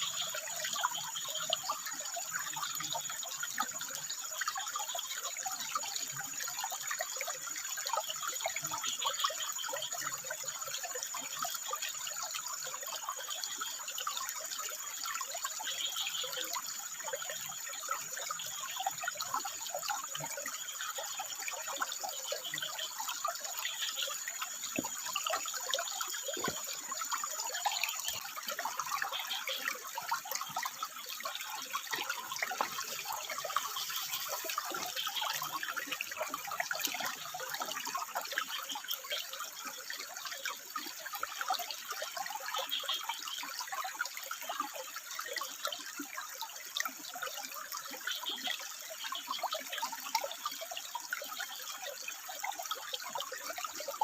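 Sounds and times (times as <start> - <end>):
water splashing over rocks: 18.9 - 44.8.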